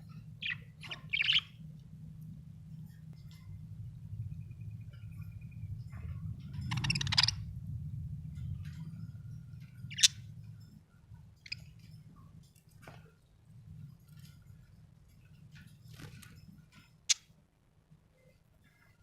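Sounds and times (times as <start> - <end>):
low hum: 0.0 - 17.1
budgerigar chirping: 0.4 - 1.6, 6.6 - 7.5, 9.8 - 10.2.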